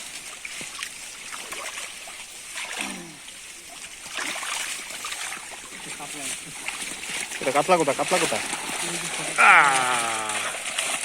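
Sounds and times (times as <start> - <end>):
pond water splashing: 0.0 - 11.0
short falling cry: 9.4 - 10.6.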